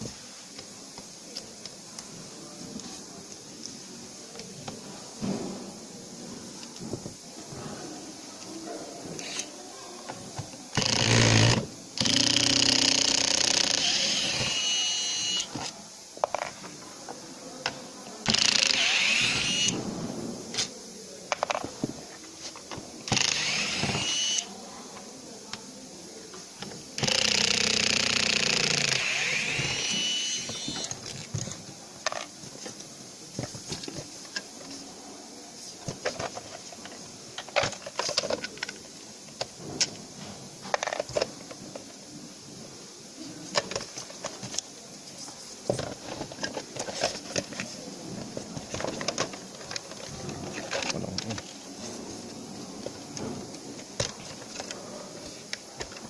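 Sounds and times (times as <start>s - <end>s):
electric screwdriver running: 10.8s - 15.5s, 18.3s - 19.7s, 23.1s - 24.4s, 27.0s - 30.8s
screws and parts clicking: 10.8s - 16.4s, 18.3s - 19.8s, 23.1s - 24.5s, 27.0s - 31.0s.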